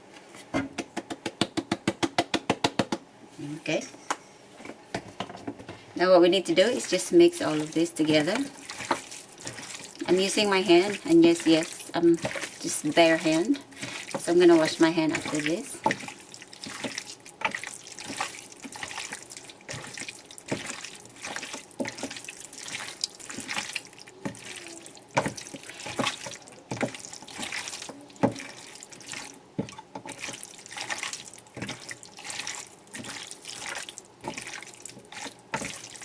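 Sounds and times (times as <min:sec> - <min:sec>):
wet squishing of chicken skin: 0:07.5 - 0:36.0.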